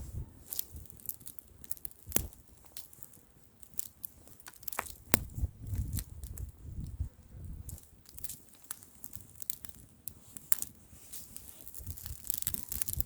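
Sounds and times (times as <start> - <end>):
wind buffeting microphone: 0.0 - 0.4, 5.1 - 7.9
wood fire crackling and popping: 0.0 - 13.0.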